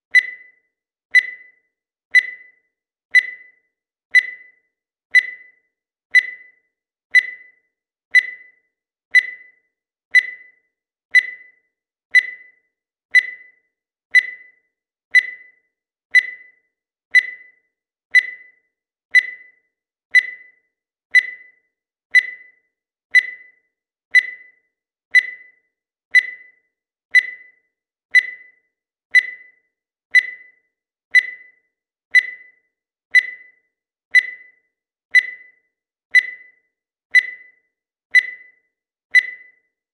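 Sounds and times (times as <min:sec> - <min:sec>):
digital timer beeping: 0:00.0 - 0:39.9.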